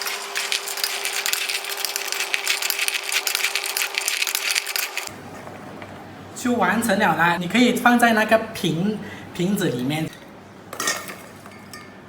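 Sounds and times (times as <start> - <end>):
dry pasta pieces clattering: 0.0 - 5.1.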